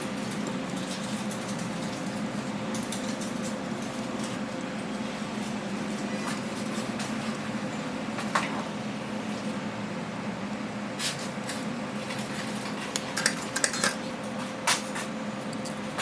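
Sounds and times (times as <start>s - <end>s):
electrical hum: 0.0s - 16.0s
small tools clicking and tapping: 12.9s - 14.0s, 15.4s - 16.0s.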